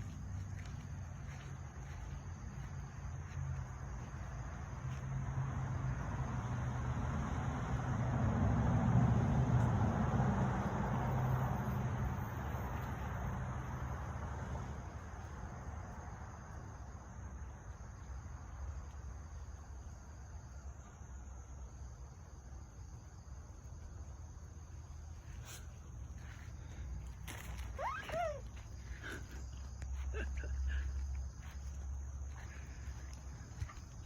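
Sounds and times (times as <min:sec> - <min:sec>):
vehicle passing by: 0:00.0 - 0:16.4.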